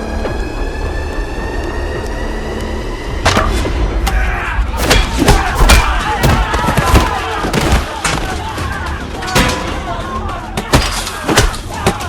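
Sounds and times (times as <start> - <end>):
men shouting and yelling: 4.0 - 12.0
punch impacts: 4.8 - 8.0.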